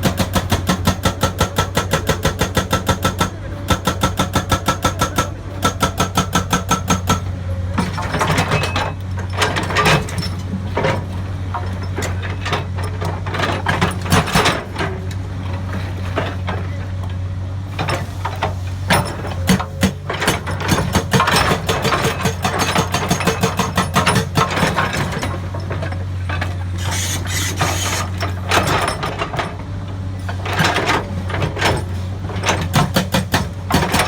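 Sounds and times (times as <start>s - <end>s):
hydraulic rock breaker pounding: 0.0s - 17.0s, 17.7s - 34.0s
excavator engine drone: 0.0s - 34.0s
steel knocking and scraping rock: 26.3s - 29.2s.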